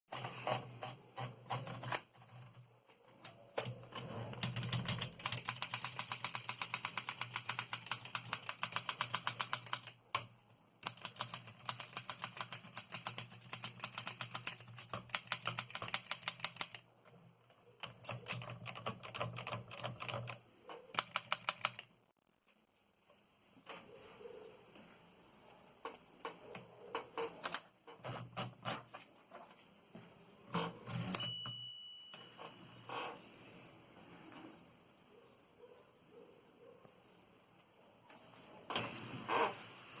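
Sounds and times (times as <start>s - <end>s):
typewriter keys clacking: 3.6s - 16.9s, 17.8s - 21.9s.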